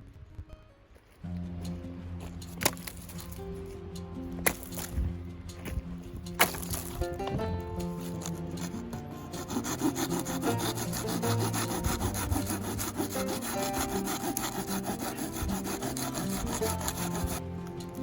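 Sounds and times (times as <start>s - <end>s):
background music: 0.4s - 18.0s
saw cutting through wood: 2.6s - 3.5s, 4.4s - 5.0s, 6.4s - 18.0s.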